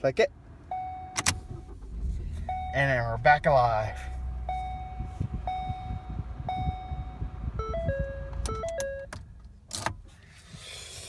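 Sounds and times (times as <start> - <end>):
low car rumble: 0.0 - 10.2
dashboard chime beeps: 2.4 - 9.1.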